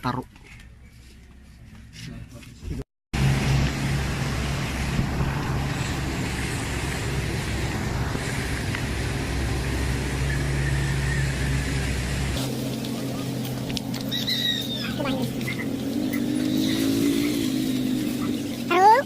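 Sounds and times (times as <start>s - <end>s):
road noise: 0.0s - 19.0s
vehicle engine running: 3.2s - 19.0s.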